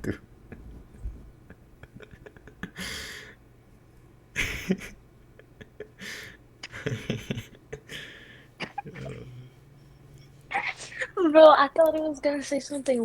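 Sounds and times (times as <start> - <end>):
quiet breathy laughing: 0.5 - 3.4, 4.4 - 9.8.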